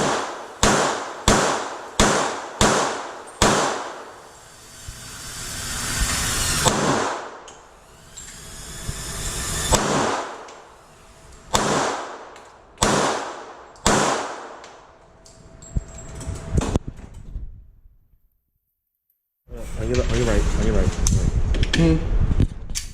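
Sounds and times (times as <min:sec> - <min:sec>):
gunshots with echo: 0:00.0 - 0:04.3, 0:06.6 - 0:07.4, 0:09.7 - 0:10.5, 0:11.5 - 0:14.6.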